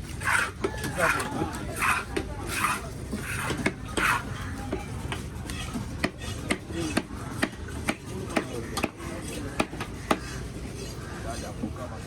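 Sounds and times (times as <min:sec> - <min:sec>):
knife scraping strokes: 0:01.8 - 0:04.3
knife chopping fish: 0:05.5 - 0:09.0.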